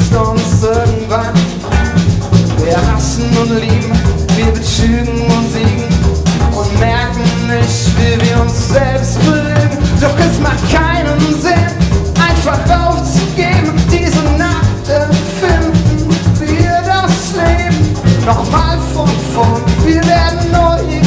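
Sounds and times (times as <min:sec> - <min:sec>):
live band playing pop-rock: 0:00.0 - 0:21.0
person singing: 0:00.0 - 0:21.0.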